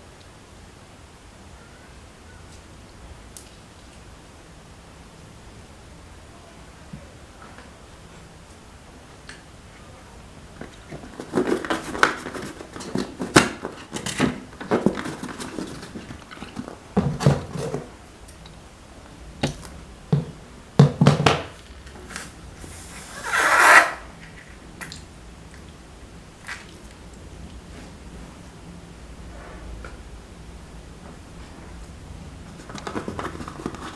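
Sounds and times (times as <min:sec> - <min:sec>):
hissing rush of air: 0:22.2 - 0:23.3.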